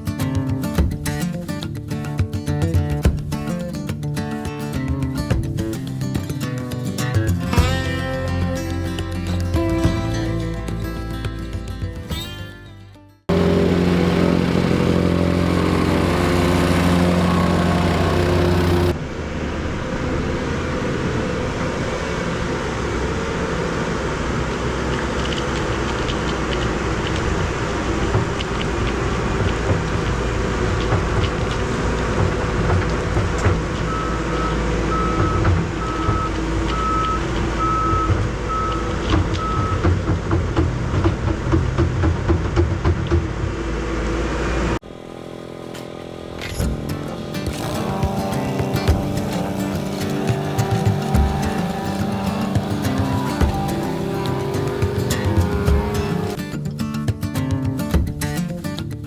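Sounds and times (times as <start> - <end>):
heavy vehicle engine running: 13.3 - 56.4
reversing alarm beeping: 33.9 - 39.9.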